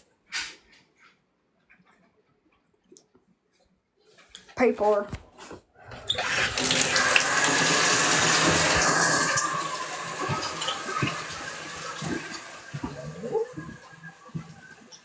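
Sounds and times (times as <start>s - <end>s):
tap water running: 5.9s - 15.0s.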